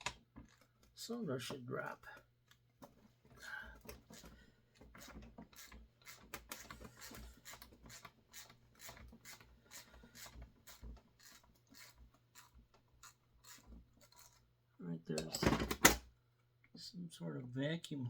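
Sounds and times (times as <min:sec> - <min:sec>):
hand tool clicking and scraping: 0:03.3 - 0:14.5.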